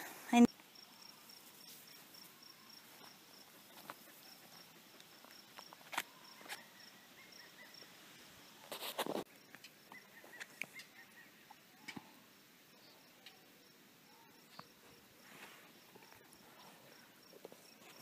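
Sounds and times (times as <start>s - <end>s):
rustle: 0.0s - 18.0s
insects chirping: 0.4s - 18.0s.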